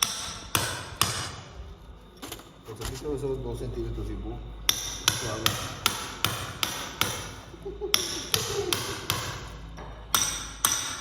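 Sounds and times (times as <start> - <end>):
hammer striking steel chisel: 0.0 - 1.4, 4.7 - 11.0.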